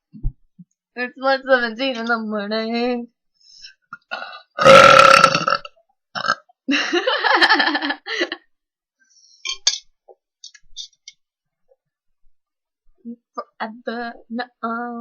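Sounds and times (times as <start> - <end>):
woman burping: 4.0 - 6.6.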